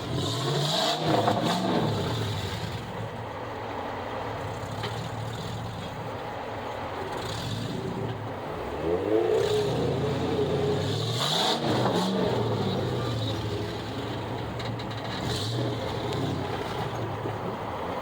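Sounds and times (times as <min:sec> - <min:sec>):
vehicle engine revving: 0:00.0 - 0:03.2, 0:07.0 - 0:18.0.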